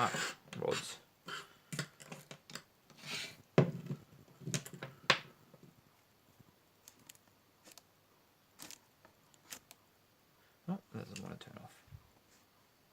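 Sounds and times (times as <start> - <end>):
small hard objects knocking: 8.6 - 9.8.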